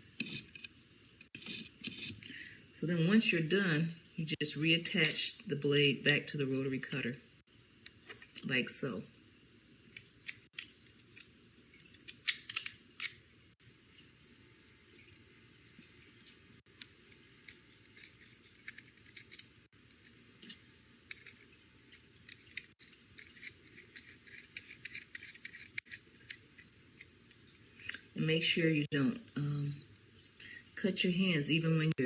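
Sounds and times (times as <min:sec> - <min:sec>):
rotary cutter clicks and scrapes: 0:22.3 - 0:26.4.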